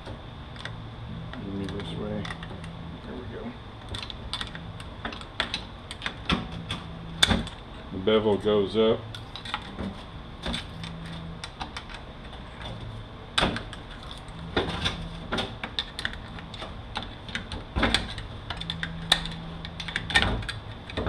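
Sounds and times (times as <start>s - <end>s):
metal parts clicking and clattering: 13.8s - 21.0s.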